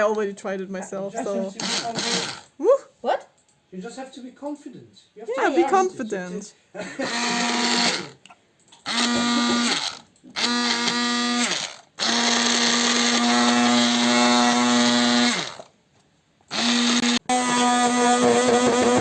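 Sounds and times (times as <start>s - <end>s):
electric hand mixer whine: 1.6s - 2.5s, 7.0s - 8.2s, 8.8s - 15.7s, 16.5s - 19.0s.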